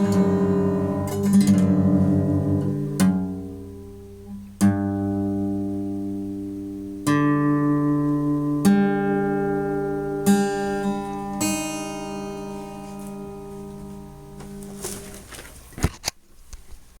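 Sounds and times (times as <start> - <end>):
guitar chords strummed: 0.0 - 15.2.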